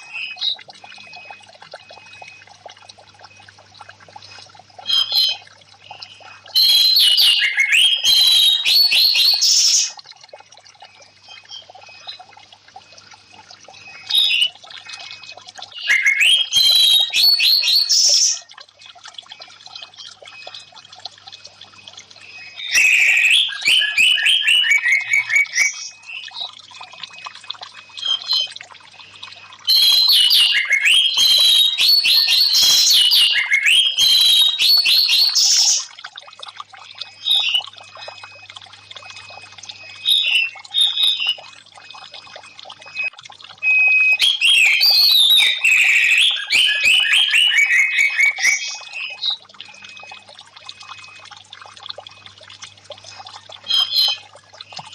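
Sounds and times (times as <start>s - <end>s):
trickling water: 0.0s - 54.9s.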